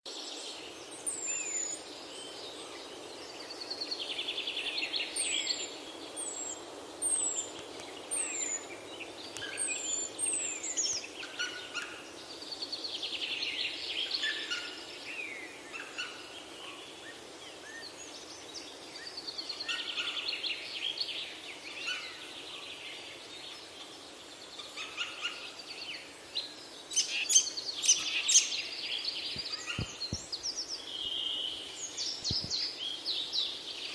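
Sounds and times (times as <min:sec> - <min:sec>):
steady low hiss: 0:00.1 - 0:33.9
sharp bird chirps: 0:27.0 - 0:32.8.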